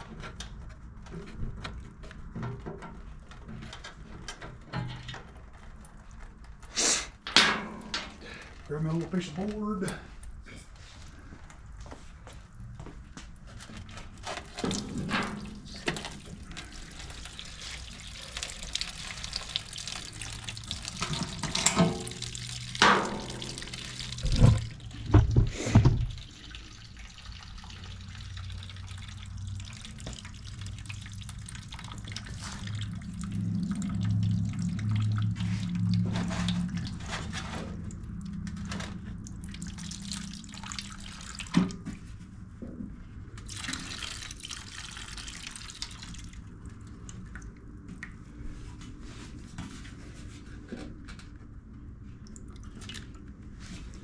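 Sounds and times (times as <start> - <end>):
knocks and clunks of handling: 0.0 - 5.9, 24.2 - 26.2
fuel dripping into container: 14.2 - 42.1, 43.2 - 48.4, 51.7 - 54.0.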